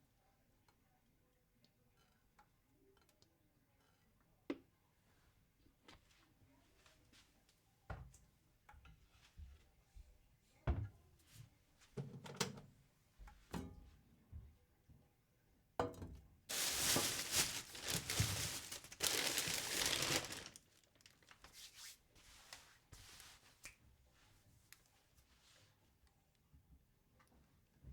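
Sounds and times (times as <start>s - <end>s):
kitchen knocks and taps: 15.8s - 16.2s.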